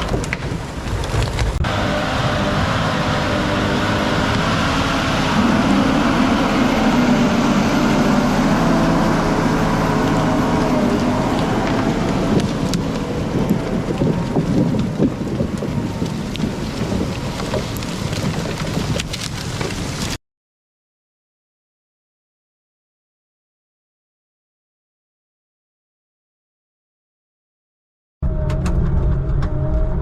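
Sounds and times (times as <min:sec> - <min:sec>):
heavy vehicle engine rumbling: 0:00.0 - 0:20.2, 0:28.2 - 0:30.0.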